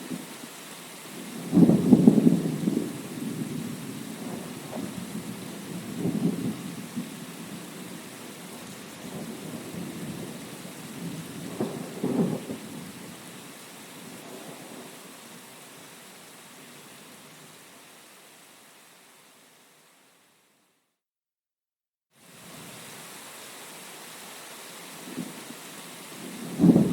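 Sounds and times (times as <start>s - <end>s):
heavy rain: 0.0s - 20.4s, 22.2s - 26.9s
rolling thunder: 1.4s - 7.6s, 11.0s - 12.9s, 26.2s - 26.9s.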